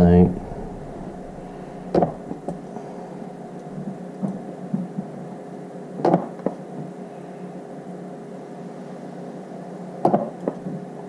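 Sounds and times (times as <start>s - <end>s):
steady low hum: 0.0s - 5.9s.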